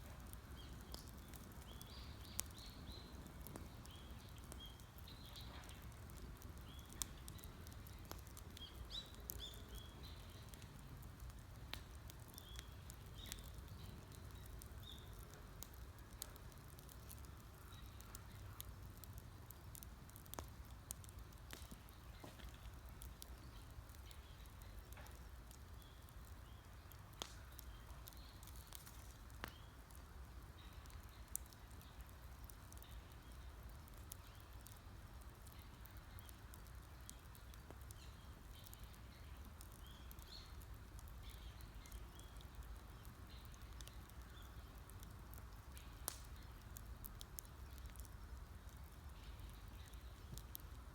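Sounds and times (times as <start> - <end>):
burning wood popping: 0.0 - 50.9
campfire crackling: 0.0 - 50.9
small birds chirping: 0.1 - 50.9.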